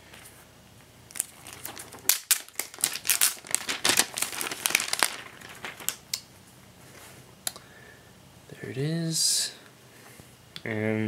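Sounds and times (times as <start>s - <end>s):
plastic film crinkling: 1.1s - 6.2s.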